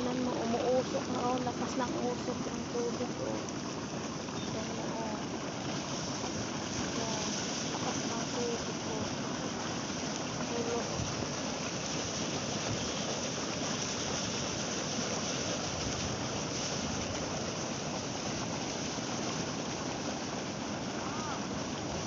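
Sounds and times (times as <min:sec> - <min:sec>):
boiling water churning: 0:00.0 - 0:22.0.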